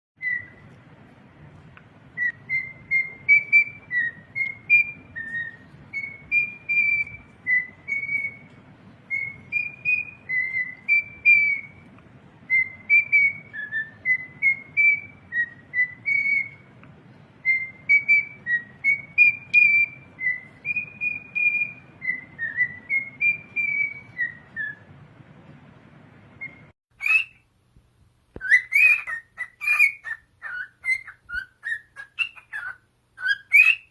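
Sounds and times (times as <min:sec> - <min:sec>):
bird chirping calls: 0:00.2 - 0:00.8, 0:02.2 - 0:11.9, 0:26.4 - 0:27.5, 0:28.4 - 0:33.9
cockatiel whistling: 0:00.2 - 0:00.8, 0:02.2 - 0:11.9, 0:12.5 - 0:16.7, 0:17.4 - 0:24.9, 0:26.4 - 0:27.4, 0:28.4 - 0:33.9.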